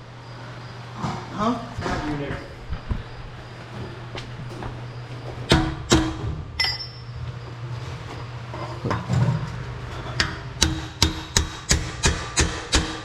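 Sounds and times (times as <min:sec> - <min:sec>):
steady low hum: 0:00.0 - 0:13.0
bright metallic clink: 0:06.6 - 0:07.2.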